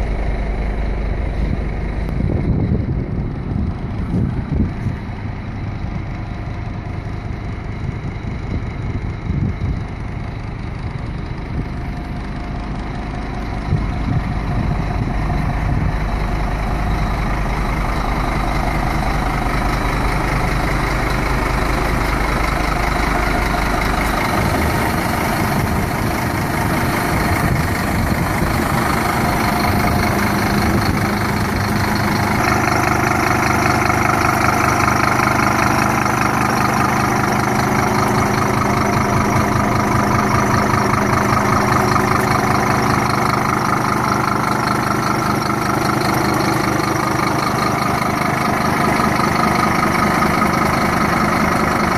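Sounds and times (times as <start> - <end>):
diesel truck engine idling: 0.0 - 51.9.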